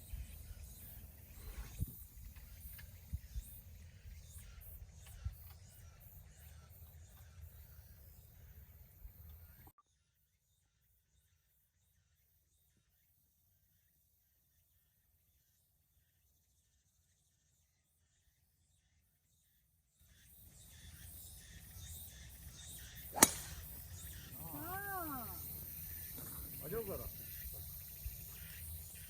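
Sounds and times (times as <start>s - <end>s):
outdoor background noise: 0.0s - 29.0s
golf club striking ball: 23.1s - 24.0s.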